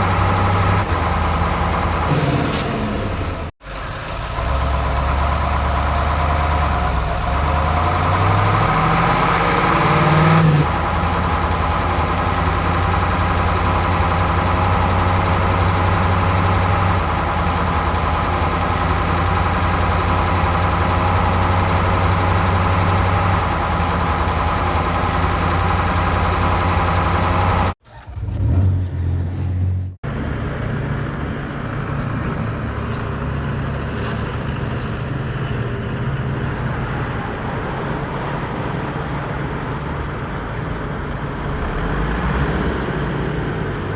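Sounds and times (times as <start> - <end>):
toy truck engine: 3.7 - 29.2.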